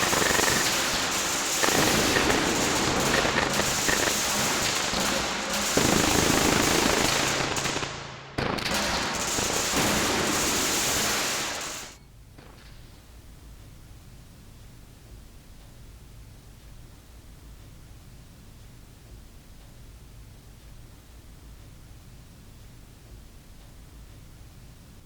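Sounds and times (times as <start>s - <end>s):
fireworks crackling and bursting: 0.0s - 12.0s.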